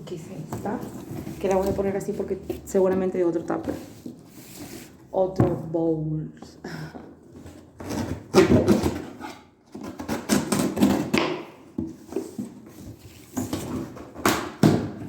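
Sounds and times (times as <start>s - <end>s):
cardboard box rustling and scraping: 0.5s - 5.1s, 11.9s - 14.1s.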